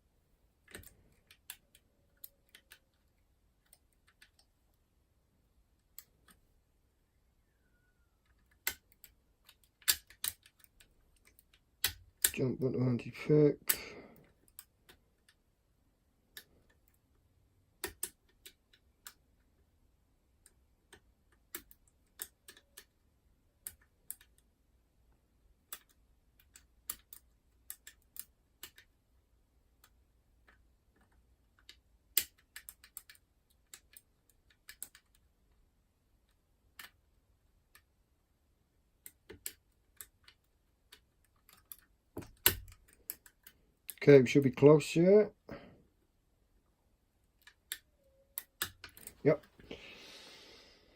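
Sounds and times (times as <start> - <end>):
metallic clicks of lock picking: 8.2 - 12.4, 25.7 - 28.9, 29.8 - 35.2, 39.0 - 44.0.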